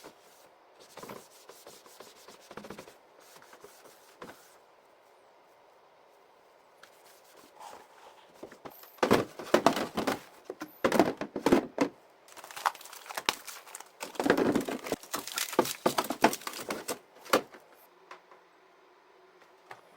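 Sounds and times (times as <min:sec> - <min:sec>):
rustling and crinkling: 0:02.5 - 0:17.9.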